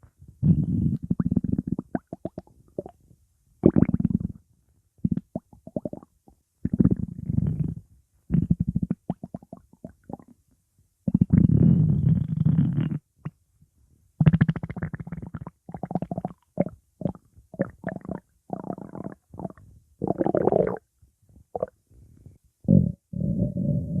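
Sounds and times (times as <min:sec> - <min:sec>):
stomach growling: 0:14.2 - 0:20.8, 0:21.5 - 0:21.8.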